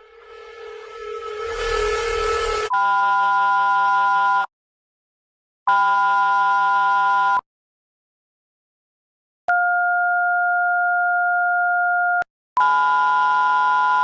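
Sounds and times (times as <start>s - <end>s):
horn-like alarm chord blasts: 0.0s - 2.8s
different alarm sound: 0.0s - 3.1s.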